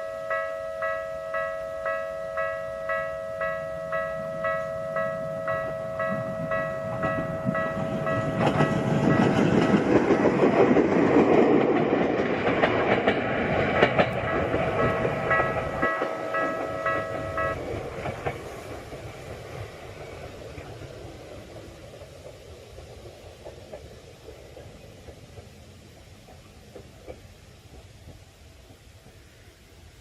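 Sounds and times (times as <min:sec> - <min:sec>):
level crossing alarm: 0:00.0 - 0:09.3
train rumble: 0:00.0 - 0:30.0
wheels clicking over rail joints: 0:00.3 - 0:30.0.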